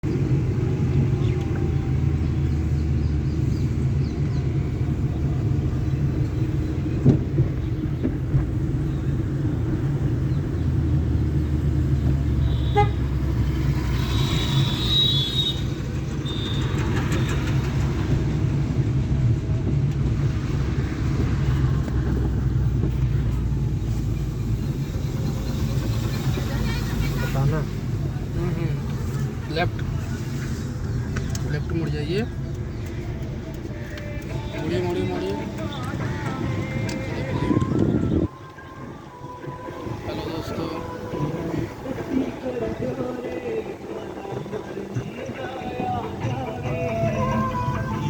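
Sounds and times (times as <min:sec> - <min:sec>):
car engine and road drone: 0:00.0 - 0:48.0
high-pitched car horn toots: 0:12.4 - 0:13.0.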